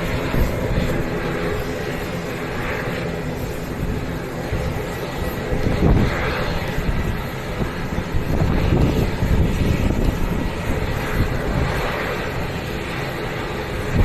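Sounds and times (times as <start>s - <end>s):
airliner engines rumbling: 0.0s - 14.0s.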